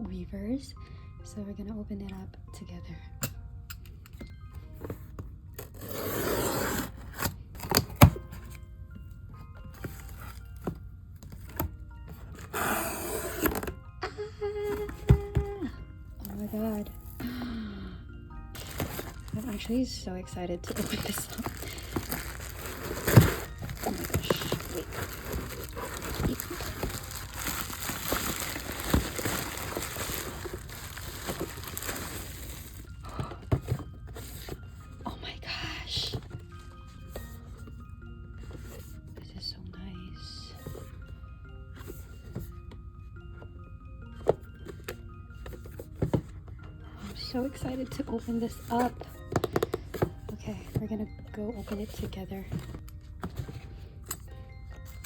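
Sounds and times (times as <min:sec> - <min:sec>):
soft background music: 0:00.0 - 0:55.0
packaging tearing and rustling: 0:18.6 - 0:19.7, 0:20.6 - 0:33.0.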